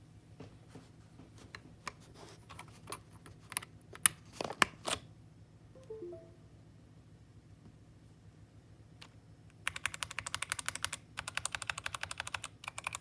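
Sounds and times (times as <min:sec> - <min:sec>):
faint short tones: 0:05.8 - 0:06.6.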